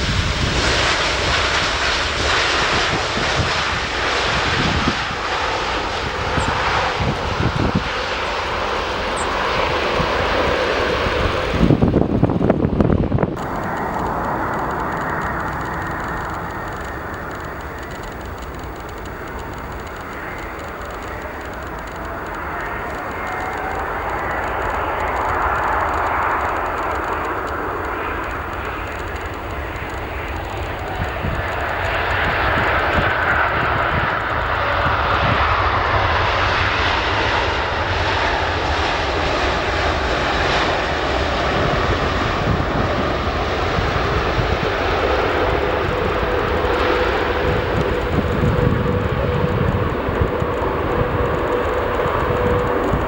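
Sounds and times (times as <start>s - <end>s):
jet airliner passing by: 0.0s - 53.0s.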